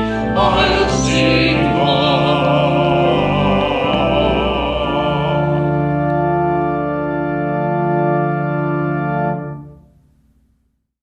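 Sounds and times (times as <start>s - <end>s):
voices singing: 0.0s - 6.4s
organ chord: 0.0s - 10.1s.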